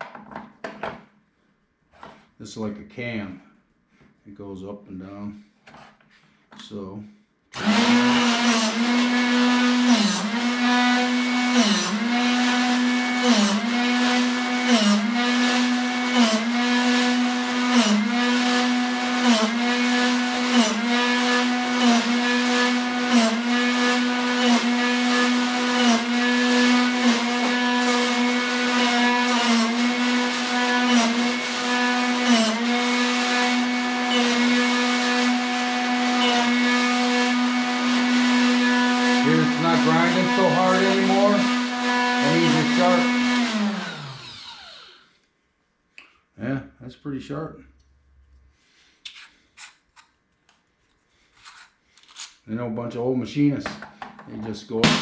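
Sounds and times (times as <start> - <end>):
drill bit grinding rasp: 7.6 - 45.0
electric motor running: 7.6 - 45.0.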